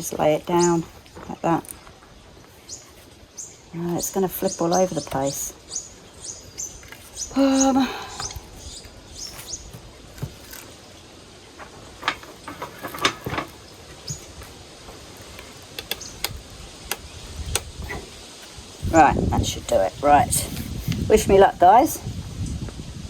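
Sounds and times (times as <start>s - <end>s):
birds chirping: 0.0s - 21.9s
wood knocking and clicking: 15.2s - 18.1s.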